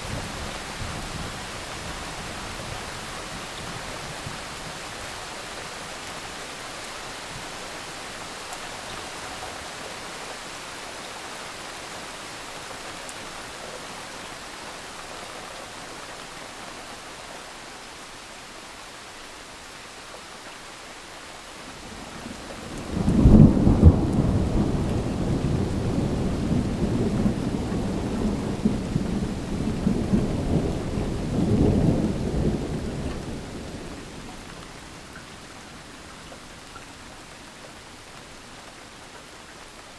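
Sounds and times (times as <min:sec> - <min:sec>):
thunder rumbling: 0:22.6 - 0:34.2.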